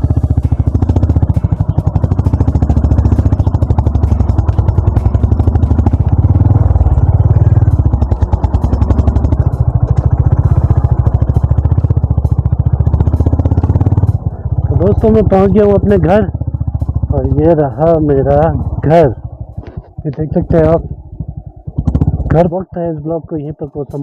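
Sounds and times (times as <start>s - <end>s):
motorcycle engine running: 0.0s - 24.0s.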